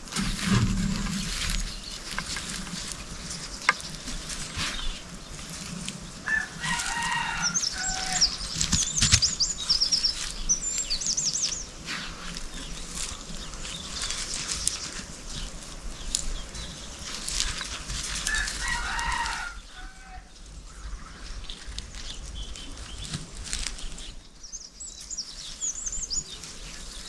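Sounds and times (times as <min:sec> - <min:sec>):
rustling and light clatter: 0:00.0 - 0:19.5, 0:21.2 - 0:27.0
small birds chirping: 0:00.0 - 0:27.0
chicken calling: 0:06.1 - 0:10.2, 0:18.2 - 0:20.4.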